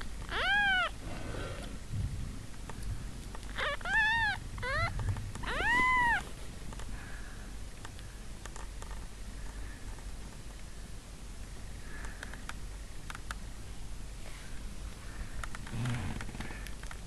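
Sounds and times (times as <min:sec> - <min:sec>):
kittens mewing: 0:00.3 - 0:01.7, 0:03.5 - 0:06.3.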